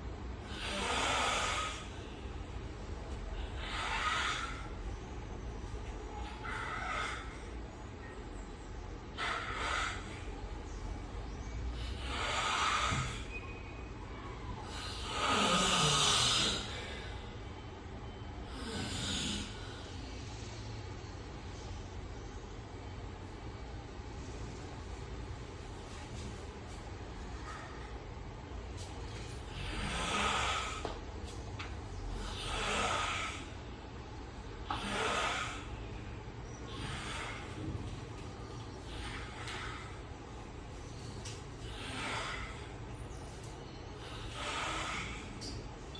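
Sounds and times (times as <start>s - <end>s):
man snoring: 14.9s - 16.8s, 18.5s - 19.6s, 29.5s - 30.9s.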